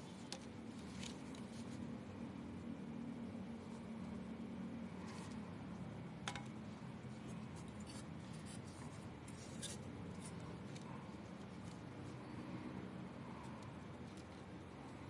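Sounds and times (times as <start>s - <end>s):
steady low hum: 0.0s - 15.0s
light scratching and rubbing: 7.1s - 15.0s.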